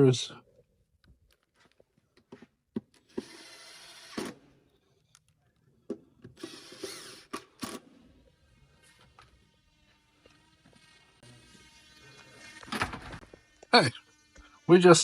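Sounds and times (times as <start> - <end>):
power drill driving screws: 2.9 - 4.6, 6.3 - 14.6.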